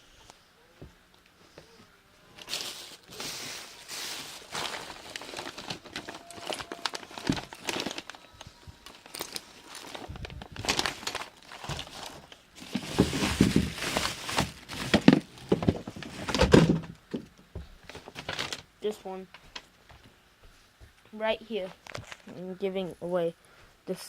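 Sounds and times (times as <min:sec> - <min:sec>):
rummaging rustling and knocking: 0:02.4 - 0:19.0.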